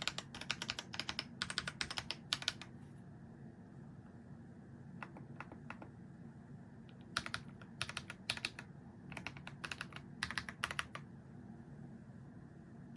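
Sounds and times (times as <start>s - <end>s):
typing on mechanical keyboard: 0.0s - 2.7s, 7.1s - 11.0s.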